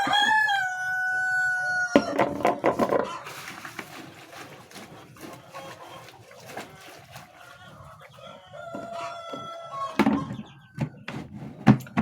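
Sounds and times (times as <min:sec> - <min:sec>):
rooster crowing: 0:00.0 - 0:02.2, 0:08.2 - 0:10.4
chickens clucking: 0:00.0 - 0:12.0.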